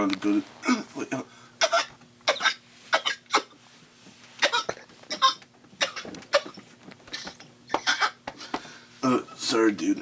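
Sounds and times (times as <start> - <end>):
man speaking: 9.0 - 10.0.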